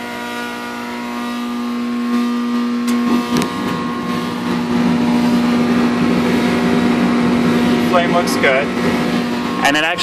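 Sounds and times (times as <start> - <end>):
furnace fan motor humming: 0.0 - 10.0.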